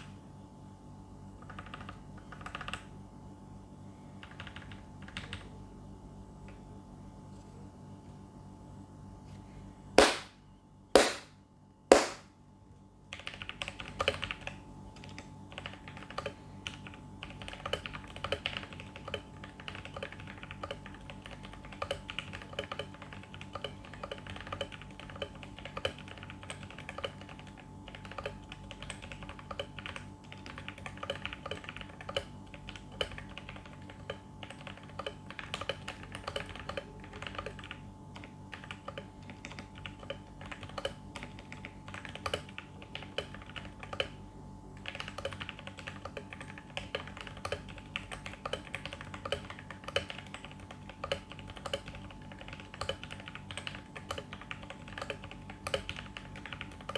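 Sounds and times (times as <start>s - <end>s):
mechanical keyboard typing clacks: 1.4s - 2.9s, 4.2s - 5.5s, 13.1s - 44.2s, 44.8s - 56.9s
loud sharp snaps: 10.0s - 10.4s, 11.0s - 12.3s.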